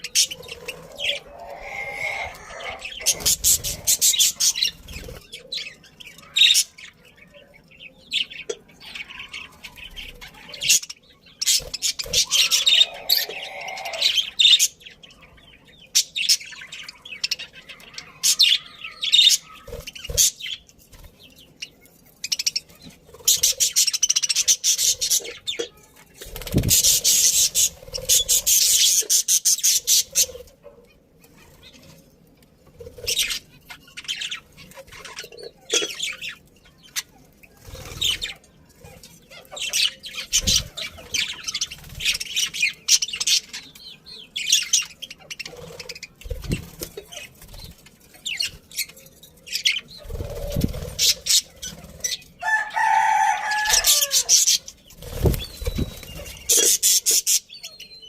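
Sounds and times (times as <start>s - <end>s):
budgerigars chirping: 0.0s - 5.2s.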